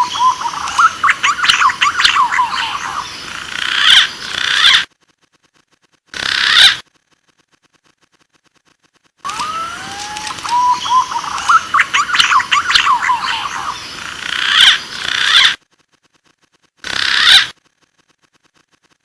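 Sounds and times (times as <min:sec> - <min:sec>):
pigeon calls: 0:09.3 - 0:15.6, 0:16.8 - 0:17.6.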